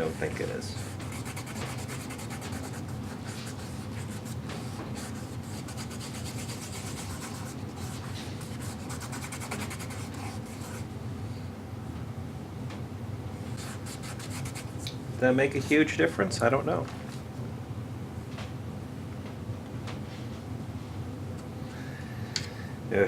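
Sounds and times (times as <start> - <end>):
scratchy rubbing on wood: 0.0 - 10.8, 13.6 - 14.7.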